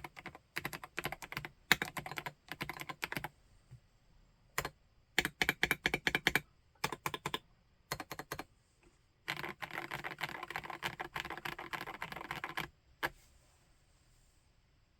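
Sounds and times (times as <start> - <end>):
typing on mechanical keyboard: 0.0 - 3.3, 4.6 - 8.4, 9.3 - 12.7.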